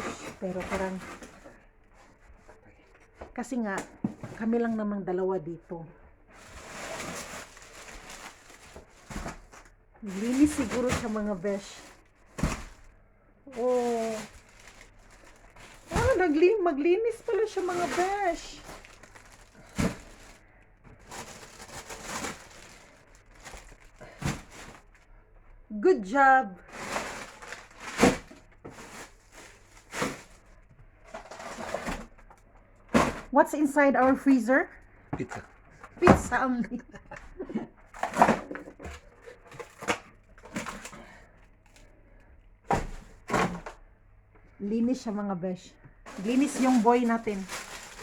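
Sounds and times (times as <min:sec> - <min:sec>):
packaging rustling and knocking: 0:00.0 - 0:01.6, 0:06.4 - 0:12.9, 0:13.5 - 0:25.0, 0:26.7 - 0:33.4, 0:37.9 - 0:41.2, 0:42.7 - 0:43.8, 0:46.1 - 0:48.0
soft rustling and shuffling: 0:13.5 - 0:25.1, 0:46.1 - 0:48.0.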